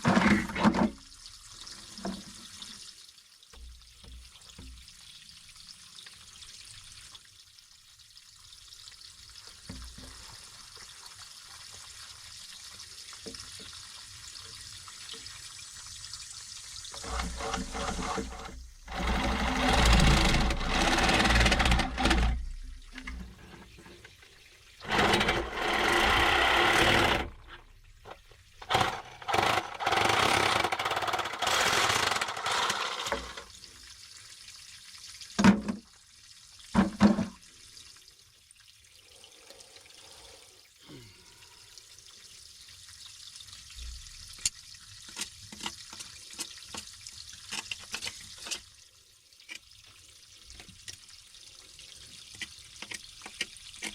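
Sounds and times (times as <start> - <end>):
water trickling: 33.3 - 53.9.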